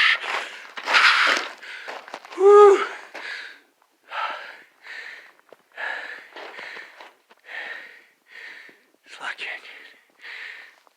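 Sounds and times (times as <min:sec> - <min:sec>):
person breathing hard: 0:02.8 - 0:08.9, 0:10.2 - 0:10.8.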